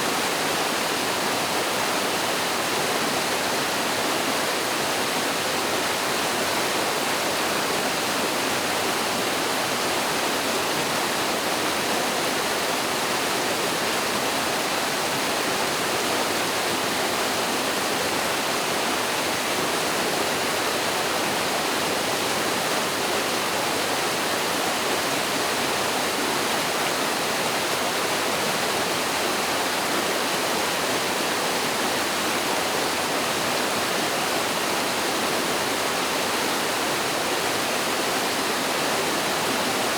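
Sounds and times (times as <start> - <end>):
stream pouring over waterfall: 0.0 - 39.9.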